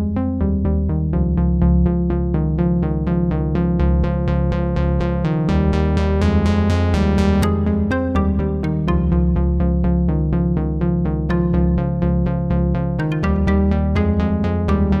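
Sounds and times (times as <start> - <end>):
sustained synth bass: 0.0 - 15.0
synthesizer repeated short notes: 7.4 - 9.7.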